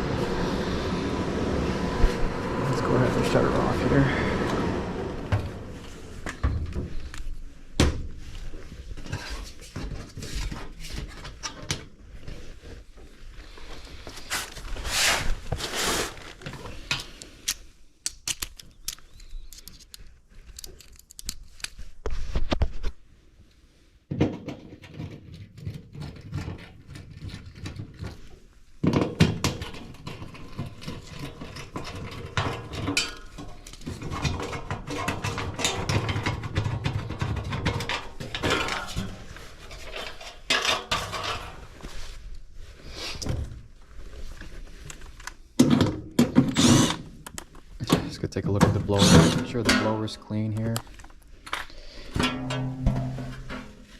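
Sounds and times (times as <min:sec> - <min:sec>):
metal clatter: 0:52.1 - 0:53.9.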